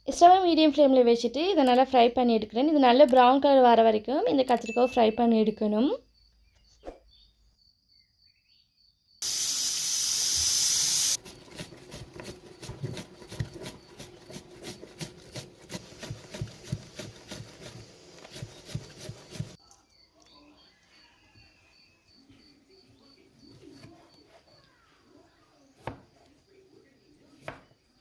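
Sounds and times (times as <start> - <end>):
vegetables deep-frying in oil: 9.2 - 11.2.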